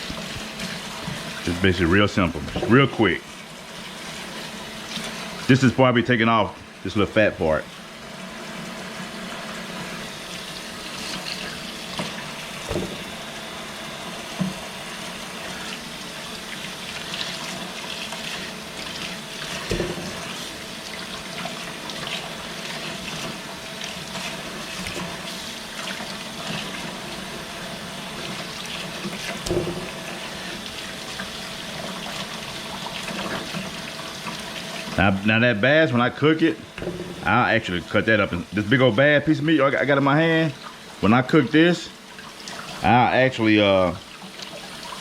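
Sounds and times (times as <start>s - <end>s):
faucet running into sink: 0.0s - 45.0s
soft knocks in sink: 12.7s - 13.3s, 19.7s - 20.4s, 29.4s - 30.1s, 36.8s - 37.5s.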